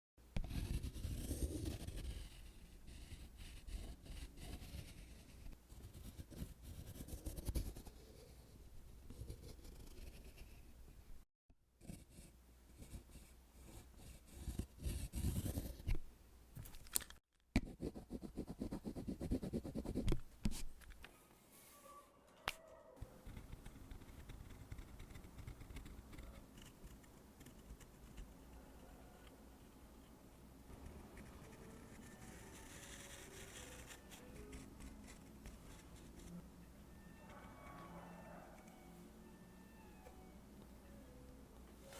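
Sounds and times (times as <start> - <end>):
drawing tool scratching surface: 0.4 - 10.7, 11.8 - 16.0, 23.2 - 28.4, 30.7 - 36.4.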